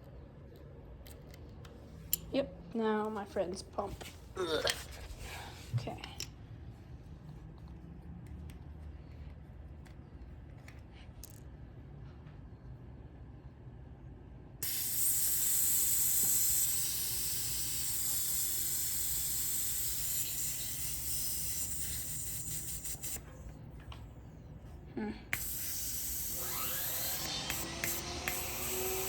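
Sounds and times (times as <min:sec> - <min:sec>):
air hissing from tyre valve: 0:14.6 - 0:23.4, 0:25.3 - 0:29.0.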